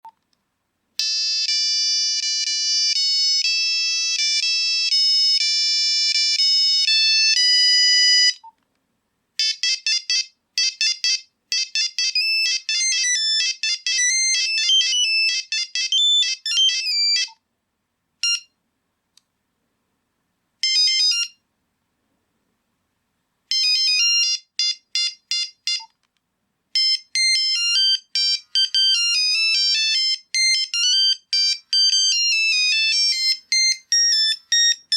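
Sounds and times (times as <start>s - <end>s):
mobile phone ringtone beeping melody: 1.0s - 8.5s, 9.4s - 17.4s, 18.2s - 18.5s, 20.6s - 21.4s, 23.5s - 25.9s, 26.8s - 34.9s.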